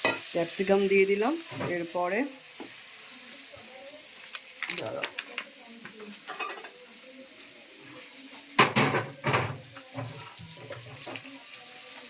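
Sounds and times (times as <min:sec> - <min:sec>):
onions frying in oil: 0:00.0 - 0:12.0
kitchen utensils clattering: 0:06.2 - 0:06.8.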